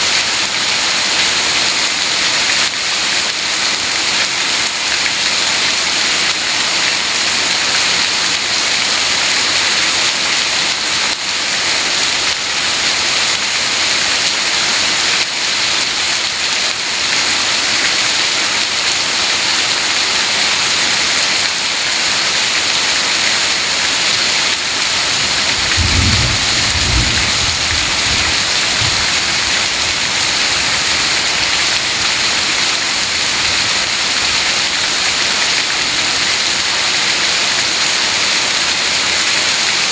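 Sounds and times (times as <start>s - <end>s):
heavy rain falling: 0.0s - 39.9s
low rumble: 25.6s - 29.8s.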